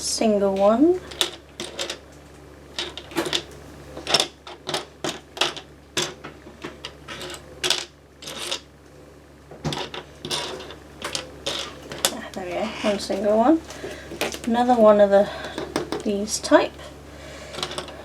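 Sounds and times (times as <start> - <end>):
plastic bricks clicking and clattering: 1.1 - 2.0, 2.8 - 8.6, 9.7 - 13.2, 17.5 - 18.0.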